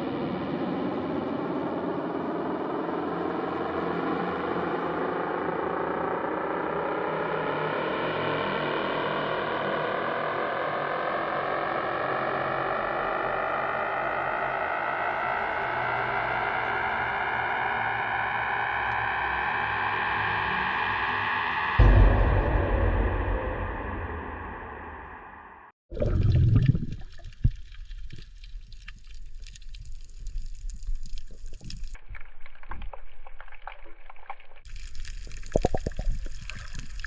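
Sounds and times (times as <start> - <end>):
buzzing droning tone rising in pitch: 0.0 - 25.3.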